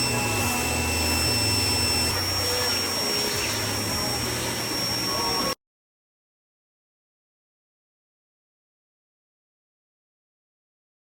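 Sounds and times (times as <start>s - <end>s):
pressure washer spray hiss: 0.0s - 5.5s
motor hum: 0.0s - 5.6s
thin high whine: 0.0s - 5.6s.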